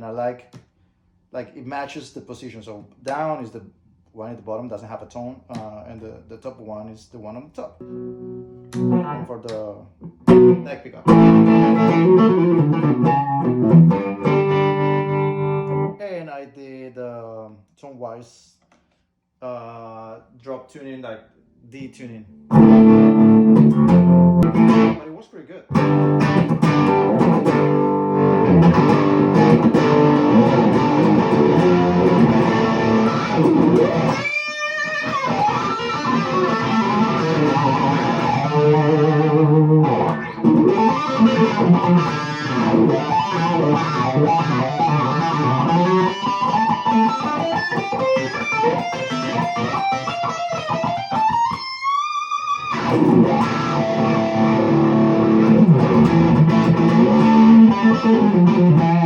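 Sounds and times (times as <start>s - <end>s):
electric guitar riffs: 7.8s - 16.0s, 22.3s - 25.1s, 25.7s - 59.0s.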